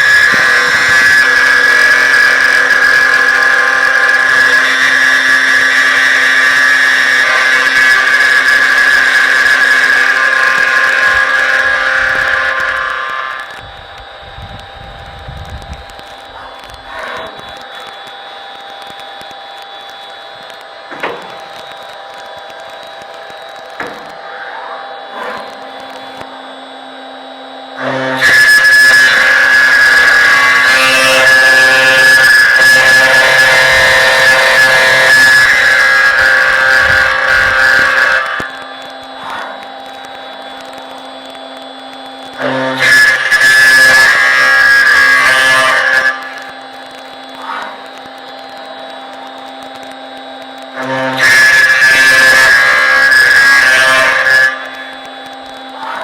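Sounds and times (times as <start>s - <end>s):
milling cutter whining in metal: 0.0s - 56.0s
router machine humming: 0.0s - 56.0s
small clicks: 9.4s - 24.2s, 43.8s - 56.0s.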